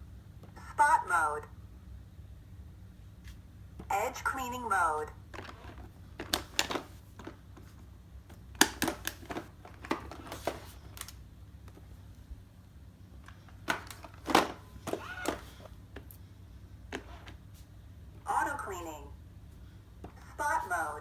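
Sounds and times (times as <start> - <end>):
steady low hum: 0.0 - 21.0
clicks and knocks of handling: 5.3 - 11.9.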